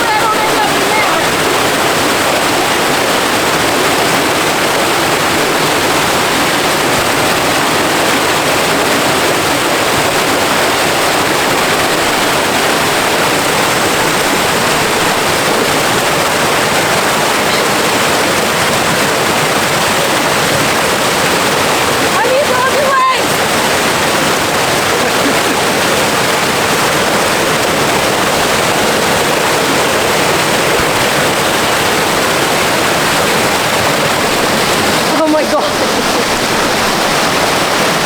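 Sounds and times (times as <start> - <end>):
rush of flowing water: 0.0 - 38.0.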